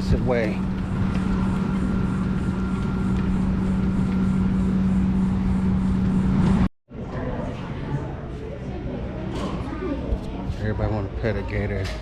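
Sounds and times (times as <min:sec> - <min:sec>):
vehicle engine drone: 0:00.0 - 0:06.7.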